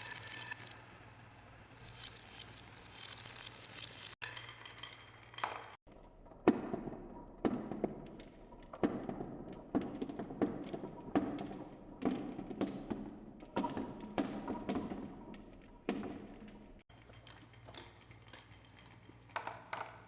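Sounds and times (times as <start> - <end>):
balls clattering down wooden track: 1.8 - 20.0
balls knocking on wood: 4.2 - 20.0.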